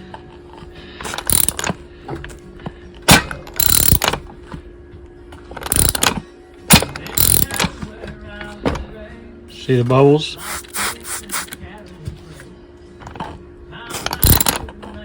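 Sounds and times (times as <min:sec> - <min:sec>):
engine turned by hand clicking: 0:01.1 - 0:01.8, 0:03.1 - 0:04.3, 0:05.6 - 0:07.9, 0:14.0 - 0:14.9.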